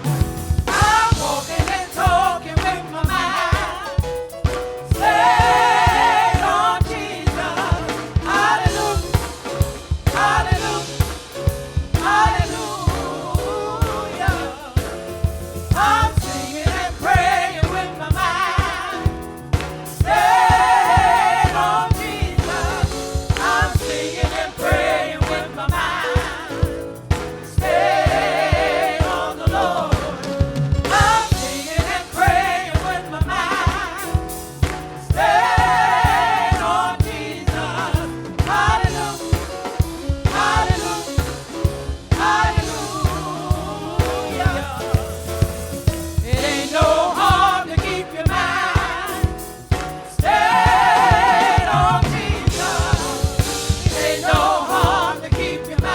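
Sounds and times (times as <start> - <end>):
gospel choir singing: 0.0 - 55.9
steady drum beat: 0.0 - 55.9.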